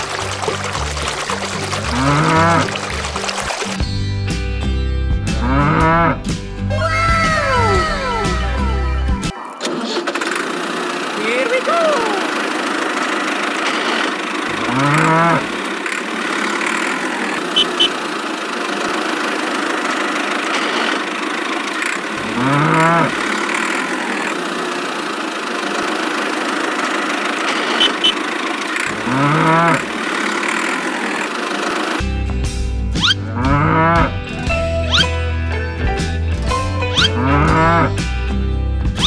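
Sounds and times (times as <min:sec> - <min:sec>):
cow mooing: 0:05.4 - 0:06.2, 0:14.5 - 0:15.6, 0:22.2 - 0:23.2, 0:28.9 - 0:29.9, 0:33.0 - 0:34.1, 0:37.0 - 0:37.9
engine running: 0:12.0 - 0:32.0.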